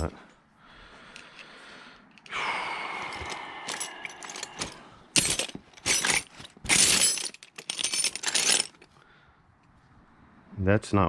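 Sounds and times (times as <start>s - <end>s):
metal hardware clinking: 3.0s - 8.9s
jangling small metal parts: 3.0s - 9.0s.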